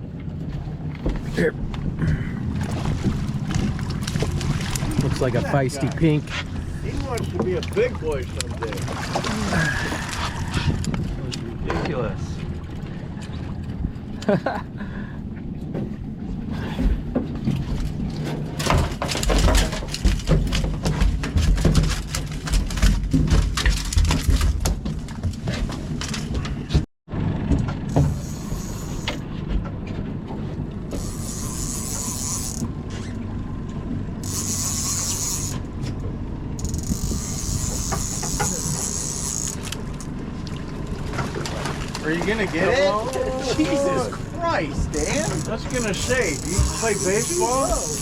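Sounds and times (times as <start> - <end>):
boat engine hum: 0.0 - 48.0
fishing reel ratcheting clicks: 28.2 - 29.2, 31.0 - 32.7, 34.2 - 35.6, 36.6 - 39.8, 45.0 - 48.0.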